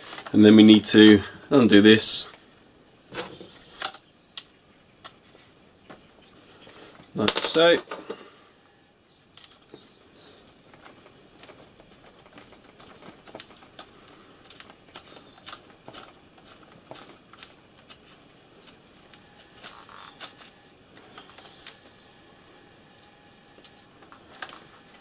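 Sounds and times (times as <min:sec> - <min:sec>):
clicks of small metal parts: 0:03.8 - 0:05.2.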